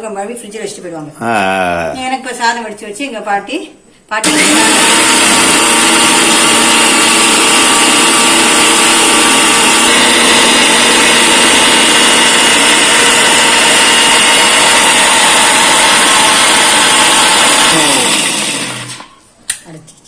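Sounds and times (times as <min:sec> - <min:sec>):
mixer grinder running: 0:04.2 - 0:19.2.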